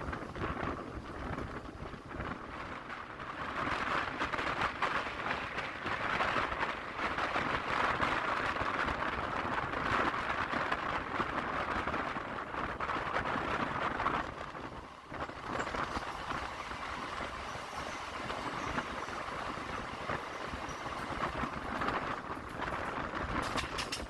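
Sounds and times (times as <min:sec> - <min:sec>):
train rushing noise: 0:00.0 - 0:24.0
rattling clicks: 0:22.4 - 0:24.0.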